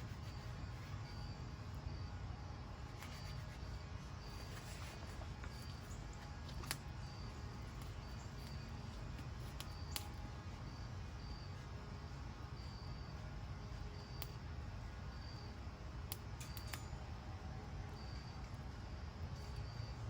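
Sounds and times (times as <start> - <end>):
wood fire crackling: 2.8 - 17.3.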